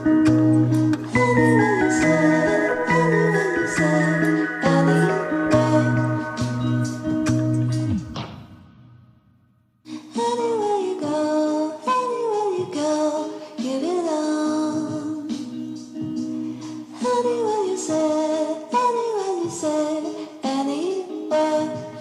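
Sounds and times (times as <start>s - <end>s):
backing music: 0.0s - 9.2s
high voice singing: 1.0s - 8.1s.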